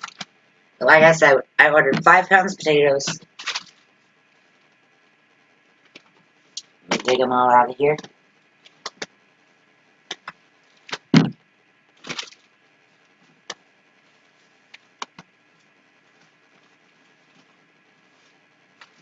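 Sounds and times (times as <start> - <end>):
dull thump: 11.1 - 11.4.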